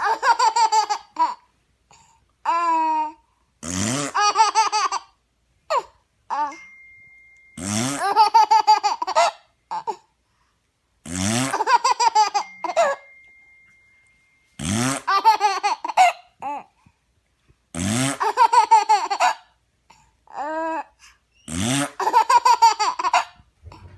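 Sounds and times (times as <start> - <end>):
baby laughing hysterically: 0.0 - 1.4, 4.1 - 5.9, 8.0 - 10.0, 11.5 - 12.9, 15.0 - 16.3, 18.2 - 19.5, 21.9 - 23.4.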